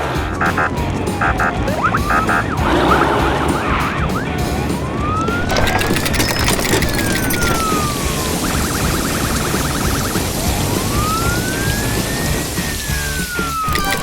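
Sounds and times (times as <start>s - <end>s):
cartoon siren wailing: 0.1s - 14.0s.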